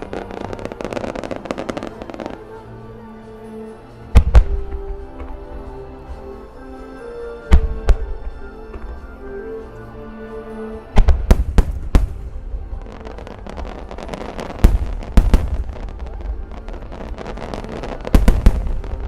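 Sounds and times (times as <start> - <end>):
fireworks crackling: 0.0 - 2.6, 11.0 - 19.0.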